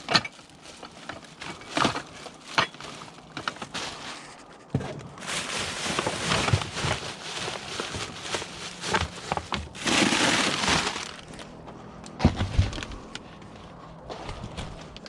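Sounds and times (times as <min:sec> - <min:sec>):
scrap rustling and clattering: 0:00.0 - 0:11.5
scrap knocking and clunking: 0:12.1 - 0:15.0.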